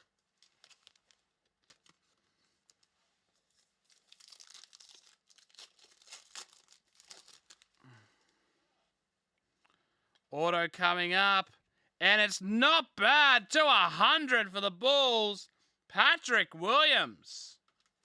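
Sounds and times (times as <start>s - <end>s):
wrapper crinkling and tearing: 0.0s - 7.9s.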